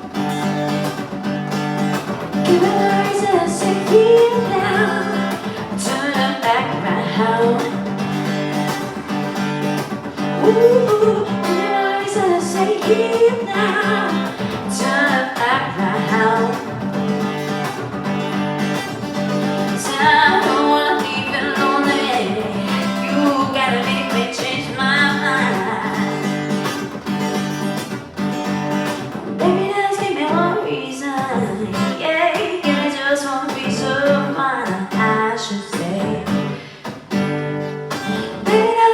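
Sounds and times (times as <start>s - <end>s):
strummed acoustic guitar: 0.0s - 38.9s
person singing: 2.4s - 8.0s, 10.2s - 16.9s, 19.6s - 26.2s, 29.4s - 36.6s, 38.5s - 38.9s.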